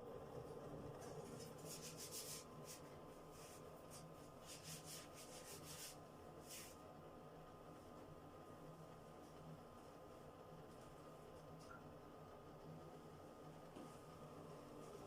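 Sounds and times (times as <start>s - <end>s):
low steady hum: 0.0s - 15.0s
faint scraping strokes: 1.0s - 6.8s.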